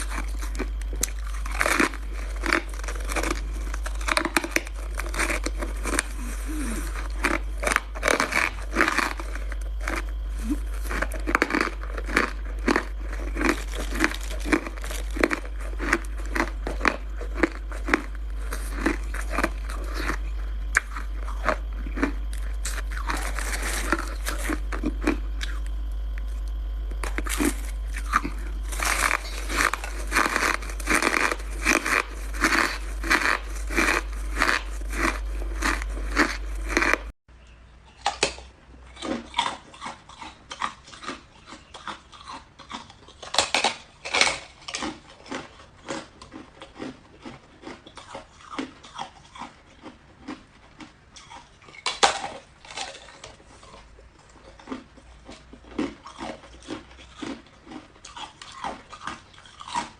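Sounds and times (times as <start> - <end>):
chewing crunchy ice: 0.0 - 37.2, 37.9 - 59.9
low hum: 0.0 - 39.0.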